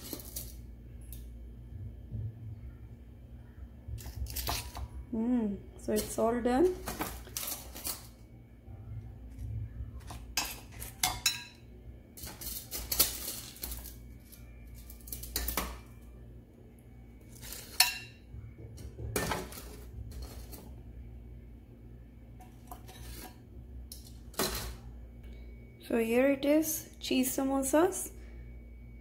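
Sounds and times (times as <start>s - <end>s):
dishes and utensils clinking: 10.0s - 15.9s, 17.3s - 20.7s, 22.4s - 24.8s.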